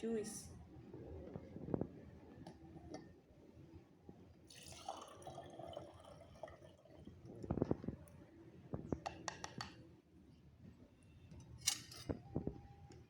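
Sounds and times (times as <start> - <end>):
liquid trickling through a sieve: 4.5 - 7.5.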